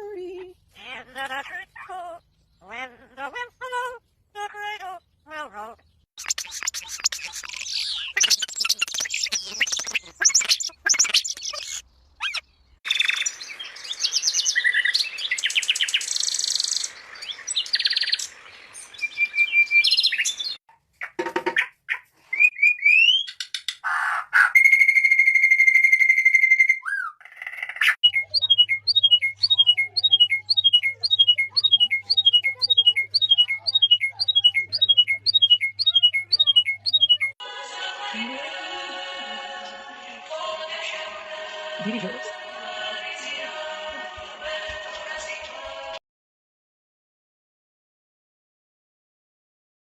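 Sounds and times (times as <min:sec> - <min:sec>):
bird chirps and trills: 0:04.9 - 0:37.4
down-slurred bird chirps: 0:05.0 - 0:37.4.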